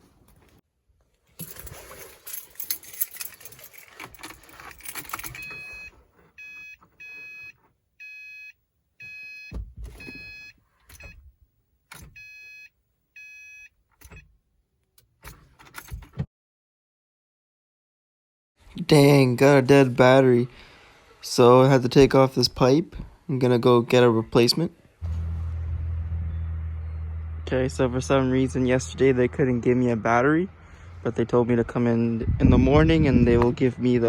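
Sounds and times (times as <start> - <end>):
car keys jangling: 1.4 - 7.1
car warning chime beeping: 5.3 - 11.2, 12.1 - 13.7.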